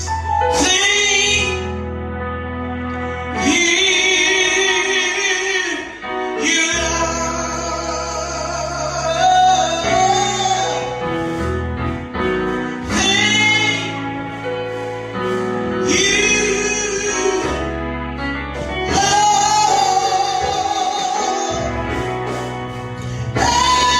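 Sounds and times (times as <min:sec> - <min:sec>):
instrumental backing with bass: 0:00.0 - 0:23.9
woman singing gospel: 0:12.8 - 0:14.0, 0:15.8 - 0:17.6, 0:18.8 - 0:23.9.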